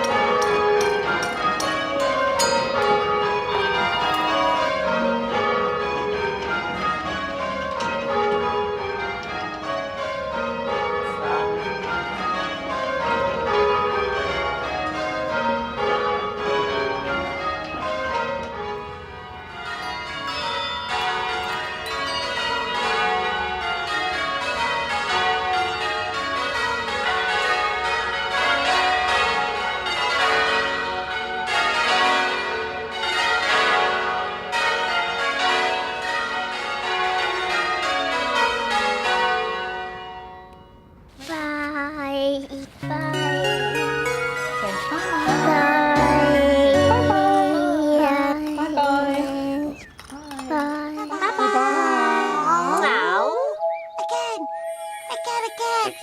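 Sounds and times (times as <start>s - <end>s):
church bells rung in rounds: 0.0s - 41.1s, 42.7s - 56.0s.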